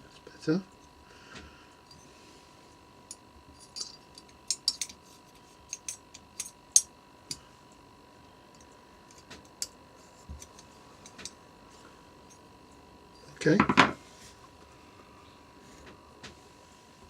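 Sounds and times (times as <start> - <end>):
metal parts clicking on bench: 3.1 - 5.0, 5.7 - 7.4.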